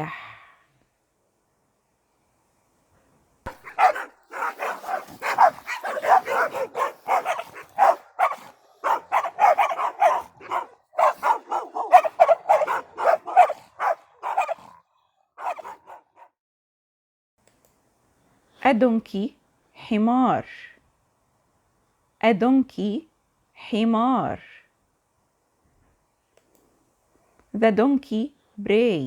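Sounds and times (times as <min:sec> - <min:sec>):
dog barking: 0:03.5 - 0:16.3.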